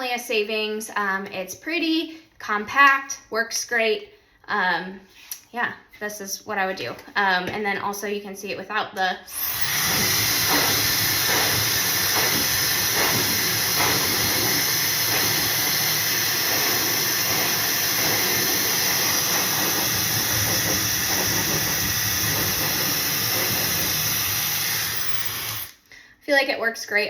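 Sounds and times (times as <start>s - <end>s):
blow dryer running: 9.3s - 25.7s.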